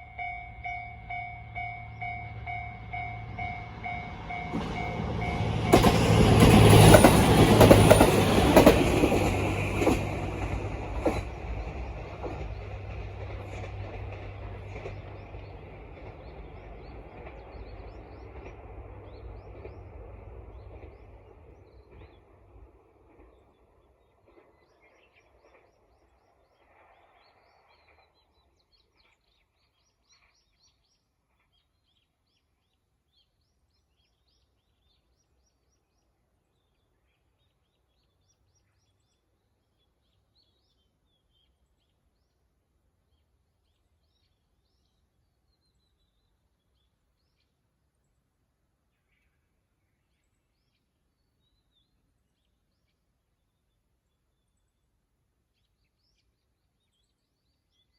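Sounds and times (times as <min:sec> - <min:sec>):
train rumble: 0:00.0 - 0:28.1.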